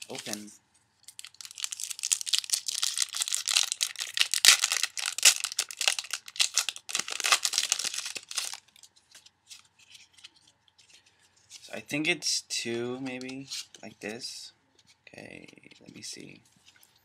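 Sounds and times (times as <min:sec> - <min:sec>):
foil wrapper crinkling and tearing: 0:00.0 - 0:00.5, 0:01.1 - 0:08.9.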